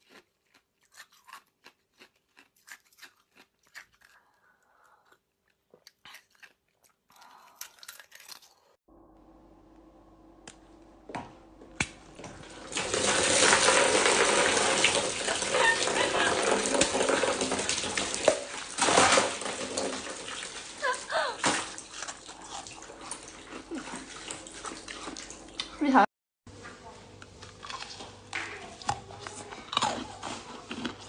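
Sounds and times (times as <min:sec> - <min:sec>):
water running from a tap: 0:12.4 - 0:25.6.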